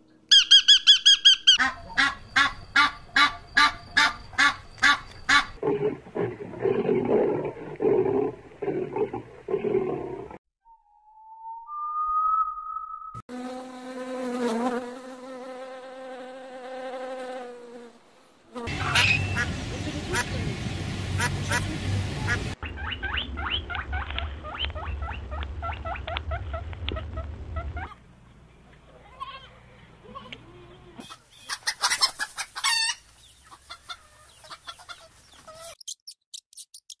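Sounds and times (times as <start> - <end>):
insect wing buzz: 13.2 - 18.8.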